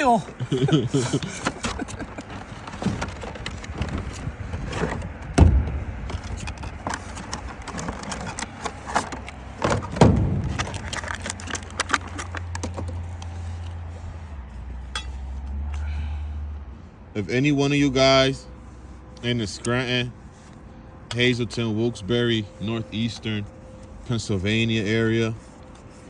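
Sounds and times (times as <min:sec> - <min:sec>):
knocks and taps on metal roof: 0:02.7 - 0:08.2, 0:09.6 - 0:10.9
steady low hum: 0:03.2 - 0:11.5
loud thuds: 0:03.6 - 0:08.2, 0:09.5 - 0:11.8.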